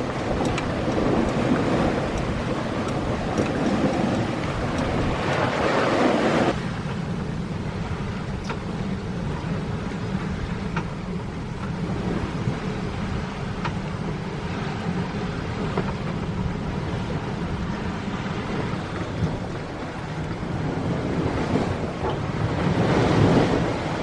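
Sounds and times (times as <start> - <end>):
water rushing along hull: 0.0 - 24.0
wind buffeting microphone: 0.0 - 24.0.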